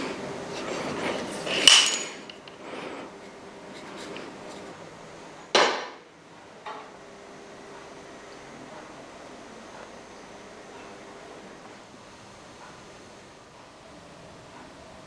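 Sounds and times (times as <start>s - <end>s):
metal parts scraping and rattling: 0.6s - 2.6s
ringing metal clank: 1.6s - 2.4s.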